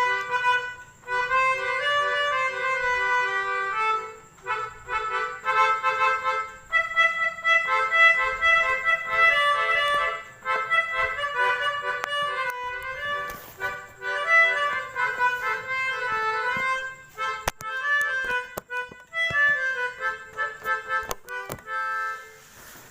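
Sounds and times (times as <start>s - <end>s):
multi-tone horn melody: 0.0s - 22.9s
sharp clicks: 17.3s - 21.7s.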